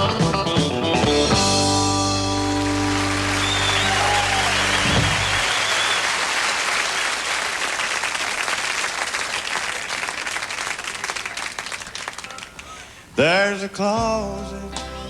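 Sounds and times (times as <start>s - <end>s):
band final chord: 1.2s - 5.4s
audience applauding and cheering: 2.2s - 12.9s
whistle from audience: 2.7s - 7.5s.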